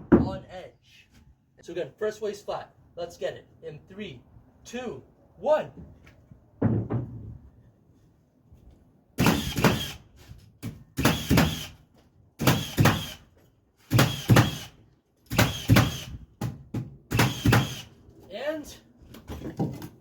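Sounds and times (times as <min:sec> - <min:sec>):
hammer striking nails into wood: 0:09.2 - 0:09.8, 0:10.6 - 0:11.6, 0:12.4 - 0:13.1, 0:13.9 - 0:14.6, 0:15.3 - 0:17.8.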